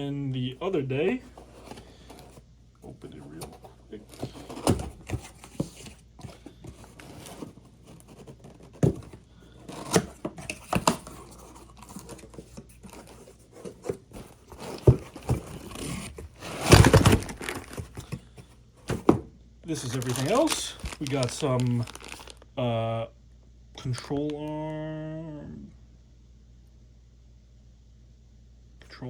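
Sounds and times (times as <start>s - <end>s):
box and parts knocking: 1.2s - 19.3s
tape and packing tearing: 19.8s - 22.3s.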